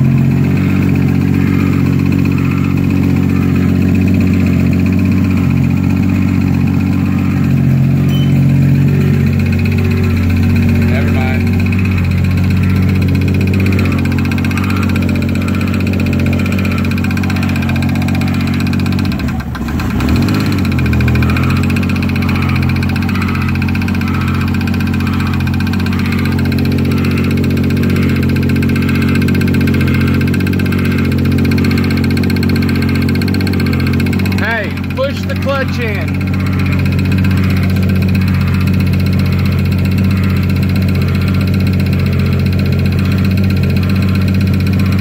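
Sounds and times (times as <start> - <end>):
car engine idling: 0.0 - 45.0.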